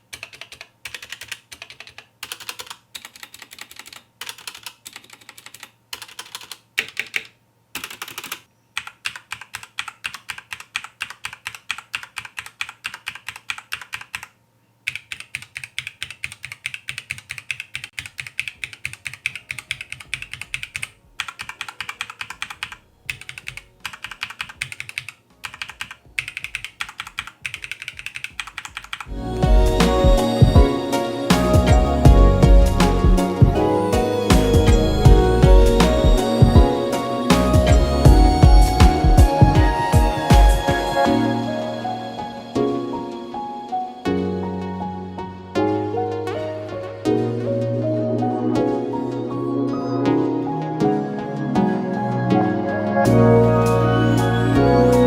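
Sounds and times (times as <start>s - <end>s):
mechanical keyboard keys clacking: 0.0s - 29.1s
music: 29.1s - 55.0s.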